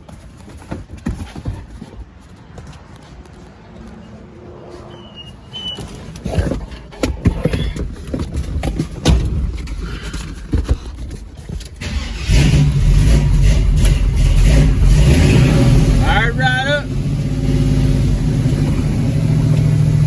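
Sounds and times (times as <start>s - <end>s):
knocks and thumps: 5.8s - 11.8s
car engine starting and running: 11.6s - 20.0s.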